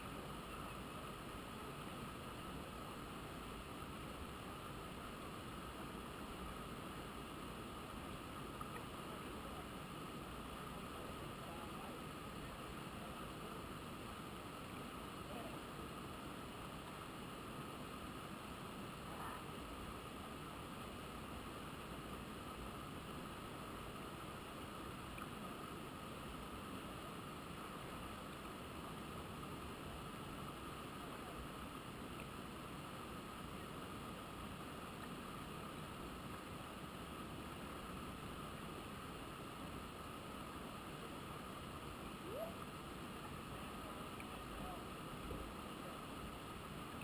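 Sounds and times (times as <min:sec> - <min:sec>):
faint high hum: 0:00.0 - 0:47.0.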